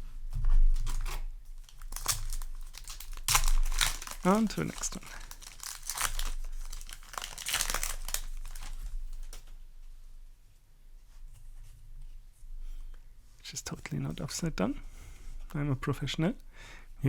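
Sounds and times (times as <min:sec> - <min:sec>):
foil wrapper crinkling and tearing: 0:00.7 - 0:09.5.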